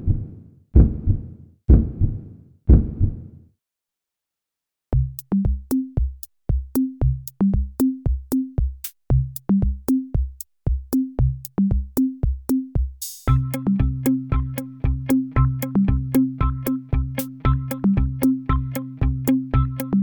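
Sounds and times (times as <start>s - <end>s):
drum machine beat: 5.0s - 20.0s
synthesizer and bass chords: 13.3s - 20.0s.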